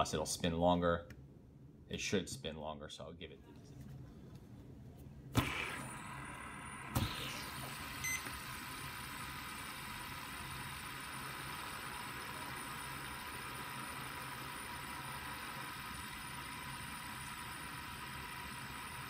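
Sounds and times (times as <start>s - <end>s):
fidget spinner whirring: 5.4s - 19.0s.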